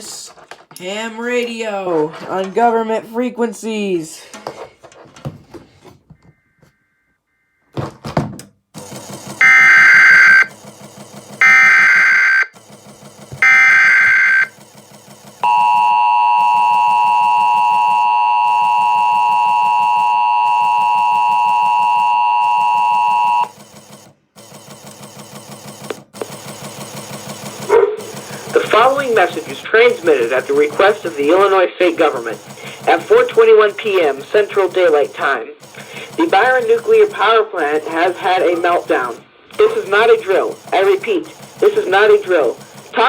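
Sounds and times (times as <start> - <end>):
screeching data bursts: 13.4 - 14.5.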